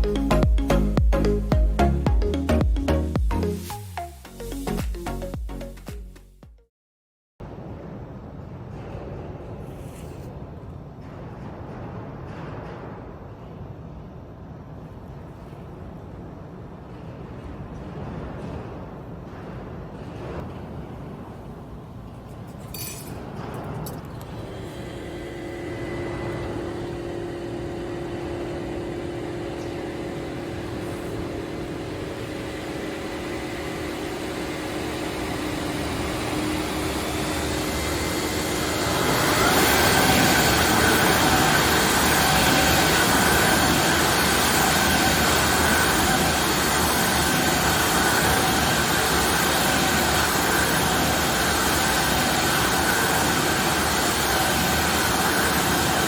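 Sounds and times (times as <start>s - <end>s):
machine whirring: 24.0s - 56.0s.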